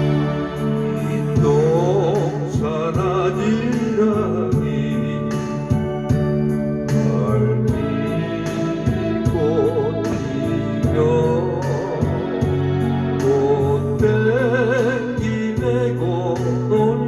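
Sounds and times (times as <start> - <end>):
rhythm-machine beat: 0.0 - 13.4
organ-like keyboard chords: 0.0 - 17.0
person singing with vibrato: 0.0 - 17.0.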